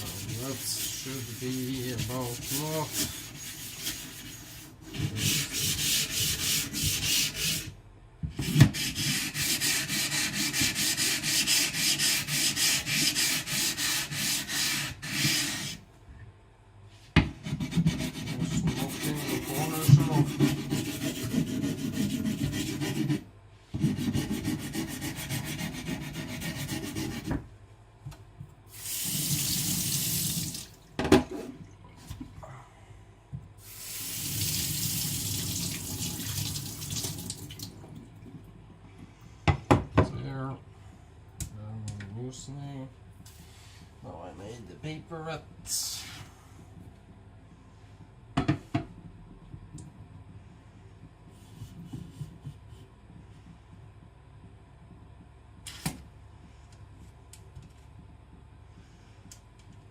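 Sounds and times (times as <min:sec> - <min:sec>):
whetstone being scrubbed: 0:00.0 - 0:07.6
running water: 0:33.7 - 0:37.8.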